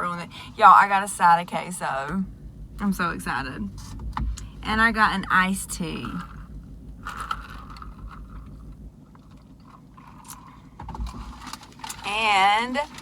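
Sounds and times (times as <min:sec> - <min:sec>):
construction and city rumble: 0:00.0 - 0:13.0.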